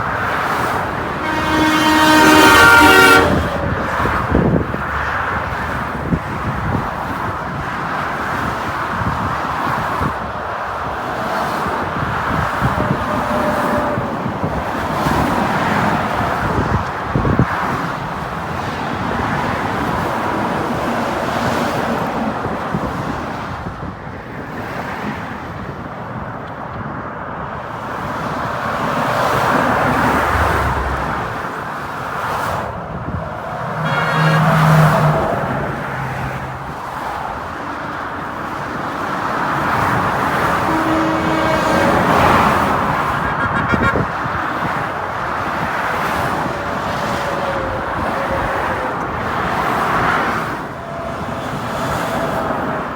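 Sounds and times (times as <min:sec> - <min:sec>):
highway traffic passing: 0:00.0 - 0:52.9
short pitched tone: 0:33.6 - 0:35.3.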